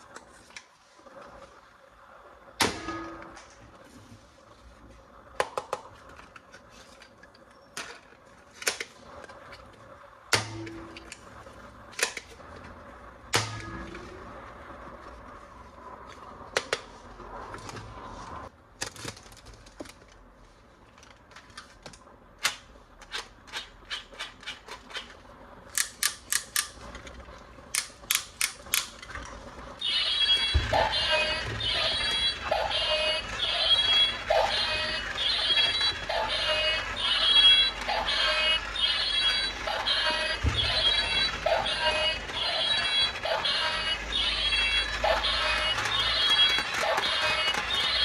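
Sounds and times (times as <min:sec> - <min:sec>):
plastic toy clicks and snaps: 0:21.5 - 0:26.9, 0:27.7 - 0:29.0.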